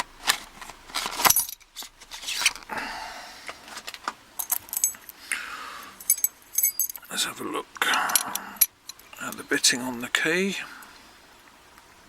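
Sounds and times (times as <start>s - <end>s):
packaging rustling: 0.0s - 2.7s, 3.5s - 5.1s
keys jingling: 1.2s - 1.7s, 4.4s - 5.2s, 6.0s - 7.1s, 7.9s - 9.4s.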